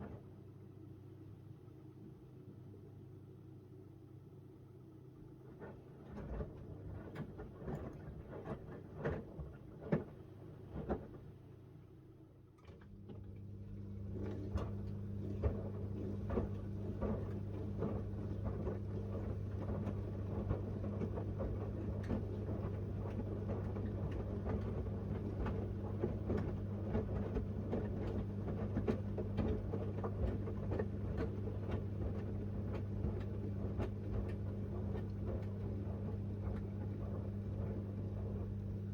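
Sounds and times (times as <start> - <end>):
washing machine motor hum: 12.9 - 38.9.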